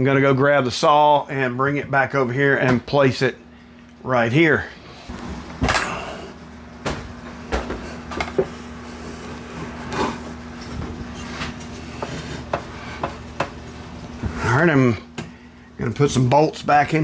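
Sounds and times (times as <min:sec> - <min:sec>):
saw scraping: 0:11.1 - 0:13.4.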